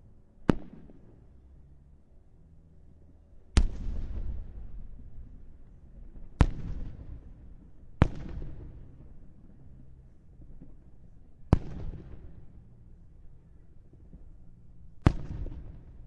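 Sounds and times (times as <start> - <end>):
fireworks bangs with rumbling tail: 3.6 - 4.8, 6.4 - 7.4, 8.0 - 9.2, 11.5 - 12.4, 15.0 - 16.0.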